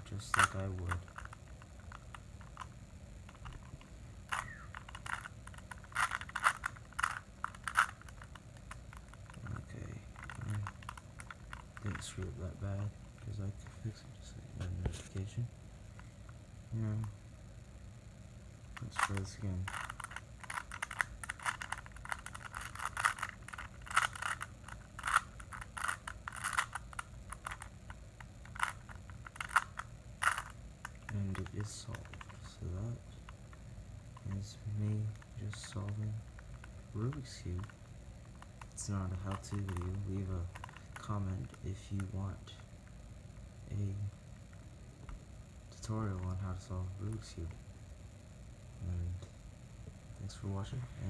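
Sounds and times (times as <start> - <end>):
puzzle cube clicking and rattling: 0.0 - 13.7, 18.8 - 42.4.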